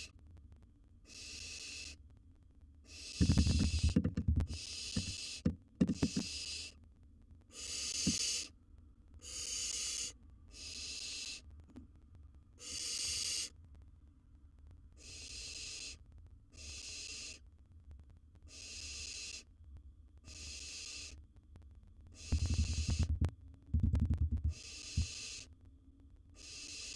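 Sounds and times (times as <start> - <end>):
owl chick hissing begging call: 1.1 - 2.0, 2.9 - 6.8, 7.5 - 8.5, 9.2 - 11.4, 12.6 - 13.6, 15.0 - 17.4, 18.5 - 19.5, 20.3 - 21.2, 22.2 - 23.1, 24.5 - 25.5, 26.4 - 26.9.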